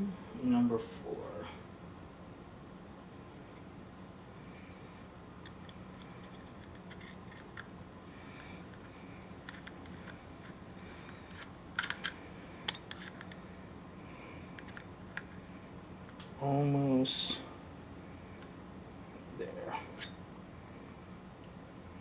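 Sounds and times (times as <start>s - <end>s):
screwdriver clicks and scrapes: 5.4s - 7.8s, 9.4s - 13.4s.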